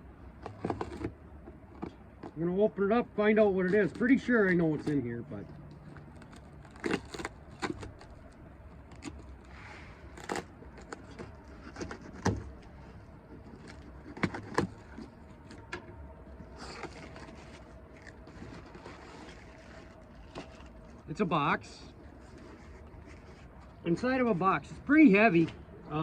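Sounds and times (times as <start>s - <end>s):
cardboard and tape tearing: 0.4s - 1.1s, 5.7s - 12.8s, 13.4s - 15.7s, 16.6s - 21.0s.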